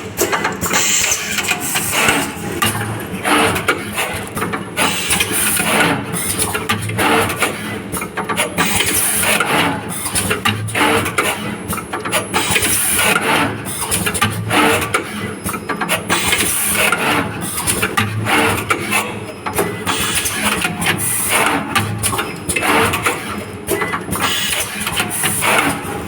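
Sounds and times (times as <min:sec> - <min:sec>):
mechanical clicks and clacks: 0:00.0 - 0:26.0.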